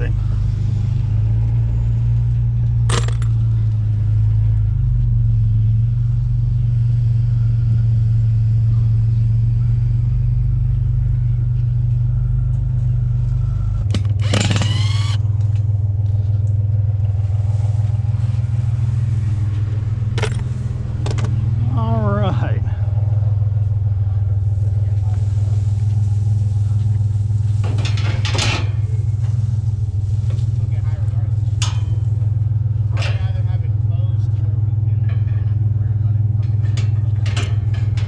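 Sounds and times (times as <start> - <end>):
truck engine and road rumble: 0.0 - 38.0.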